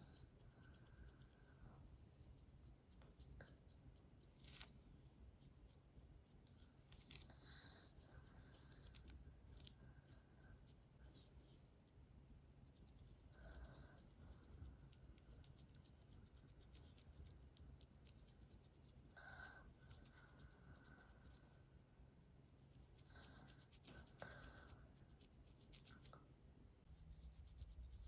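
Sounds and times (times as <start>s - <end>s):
fingernails scratching scalp: 12.7s - 21.5s, 22.5s - 26.1s, 26.8s - 28.0s.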